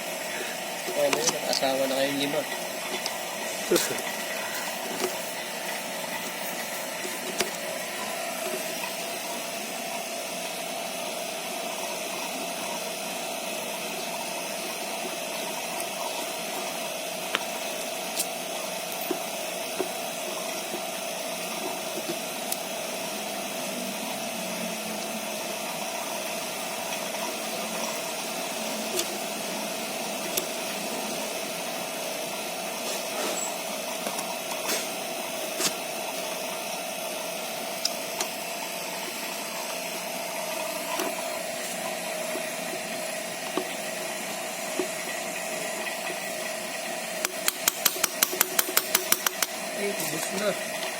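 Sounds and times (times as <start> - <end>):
vacuum pump running: 0.0 - 50.9
tools clicking: 47.2 - 49.6.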